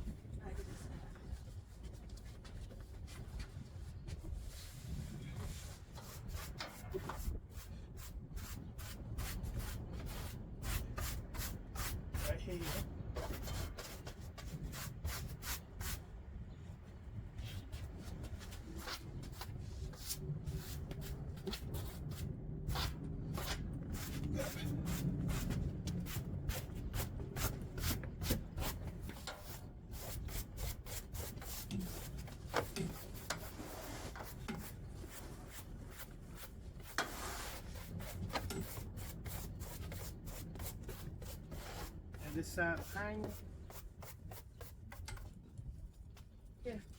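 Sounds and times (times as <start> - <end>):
broom sweeping sand and dirt: 33.0 - 43.8.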